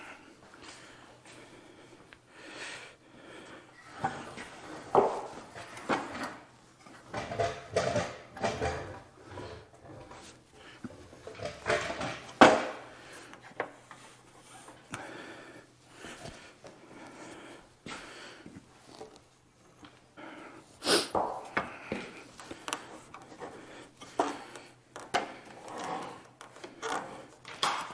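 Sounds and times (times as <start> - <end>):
knocking and clatter of objects: 4.0 - 12.9.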